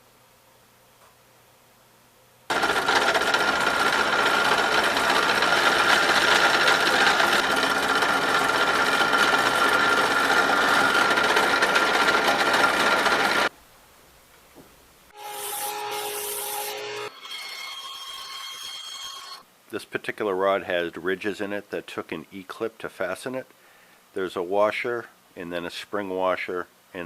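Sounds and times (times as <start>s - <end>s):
power tool whining: 2.5s - 13.5s, 15.1s - 19.4s.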